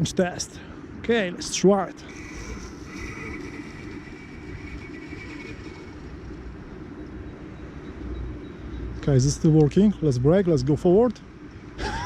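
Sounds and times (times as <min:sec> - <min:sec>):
electric motors high whine: 0:02.0 - 0:07.5.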